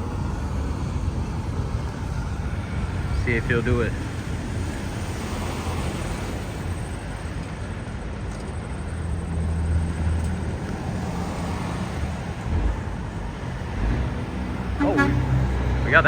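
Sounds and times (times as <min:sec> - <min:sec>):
highway traffic passing: 0:00.0 - 0:16.0
heavy vehicle passing: 0:09.3 - 0:16.0.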